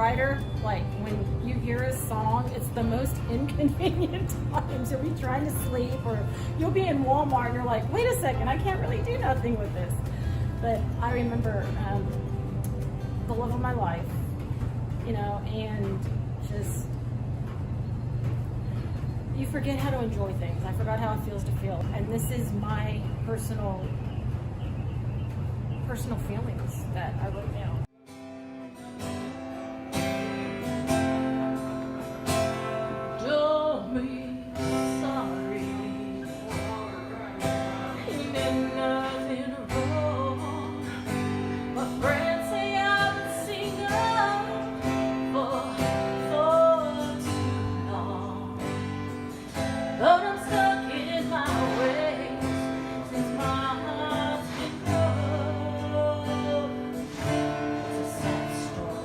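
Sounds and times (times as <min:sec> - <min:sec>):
low bass: 0:00.0 - 0:27.9
strummed acoustic guitar: 0:00.0 - 0:59.0
person singing: 0:32.9 - 0:48.7.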